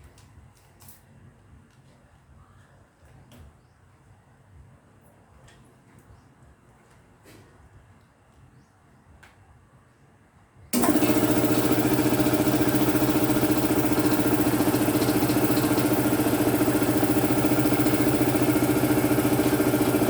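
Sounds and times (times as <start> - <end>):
air compressor pulsing: 10.8 - 20.0.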